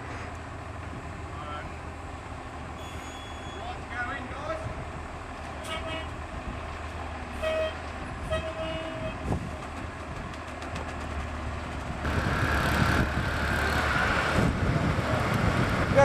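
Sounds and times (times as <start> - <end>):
heavy engine running: 9.2 - 16.0.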